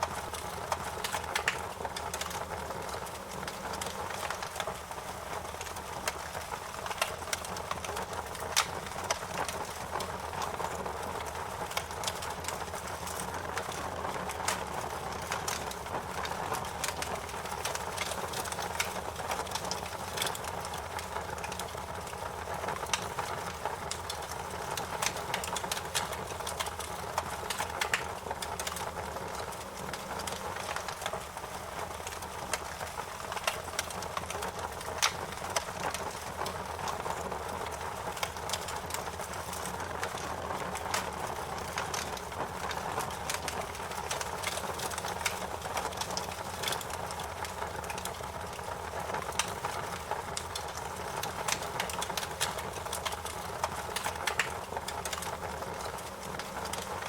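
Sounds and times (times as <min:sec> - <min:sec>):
fire hissing and rumbling: 0:00.0 - 0:57.0
wood crackling and popping: 0:00.0 - 0:57.0.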